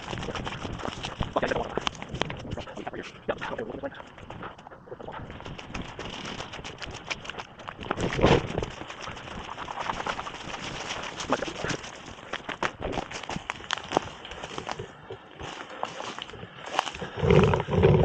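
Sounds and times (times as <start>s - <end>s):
heavy close breathing: 0.0s - 7.7s, 14.0s - 17.9s.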